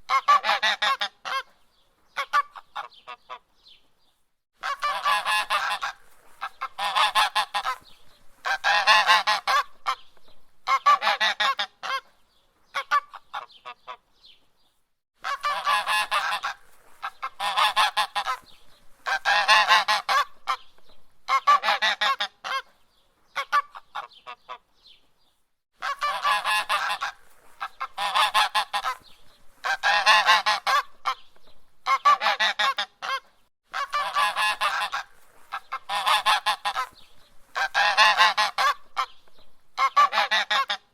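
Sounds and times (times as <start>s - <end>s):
goose honking: 0.1s - 1.5s, 4.6s - 7.8s, 8.4s - 10.0s, 10.6s - 12.0s, 15.2s - 18.4s, 19.0s - 20.6s, 21.3s - 22.7s, 25.8s - 31.2s, 31.8s - 39.2s, 39.8s - 40.9s.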